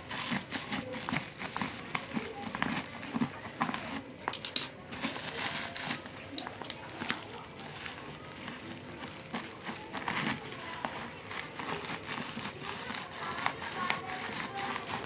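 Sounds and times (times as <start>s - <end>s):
packaging crinkling: 0.0s - 15.0s.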